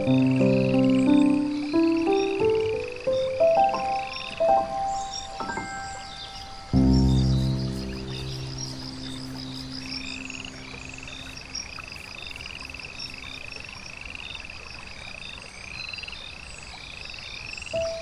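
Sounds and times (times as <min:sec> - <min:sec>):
frogs calling in chorus: 0:00.0 - 0:18.0
high peeps: 0:01.1 - 0:13.4
low music chord: 0:03.6 - 0:11.4.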